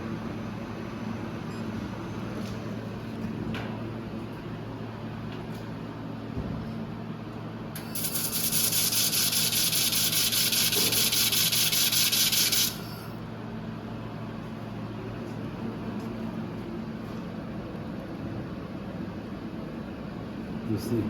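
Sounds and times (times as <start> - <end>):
laser welder hissing: 7.8 - 13.1.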